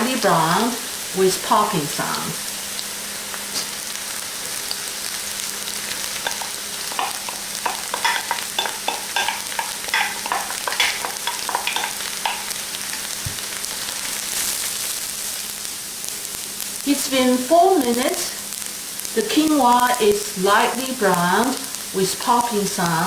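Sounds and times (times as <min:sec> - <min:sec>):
grain sizzling in oil: 0:00.0 - 0:23.0
grain popping: 0:05.4 - 0:15.2
stirring clicks and scrapes: 0:06.2 - 0:13.2.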